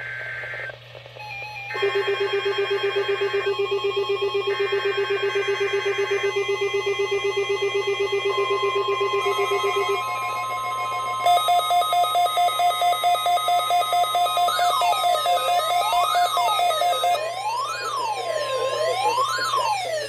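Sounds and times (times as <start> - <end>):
steady warning alarm tone: 1.2 - 20.0
shrill data bursts: 9.3 - 17.2.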